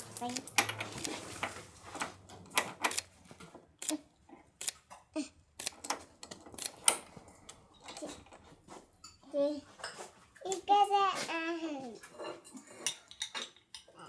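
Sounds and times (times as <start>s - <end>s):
ratchet wrench clicking: 0.2s - 1.2s, 2.8s - 3.1s, 5.6s - 6.0s, 6.6s - 7.0s.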